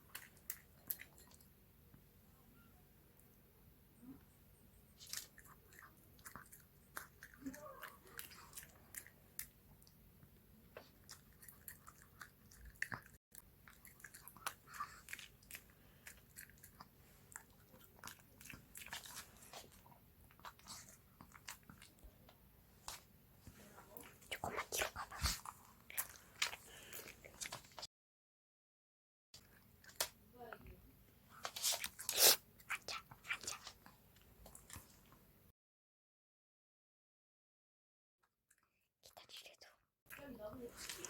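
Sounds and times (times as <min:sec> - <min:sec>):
dog chewing with wet mouth clicks: 0:05.0 - 0:22.1.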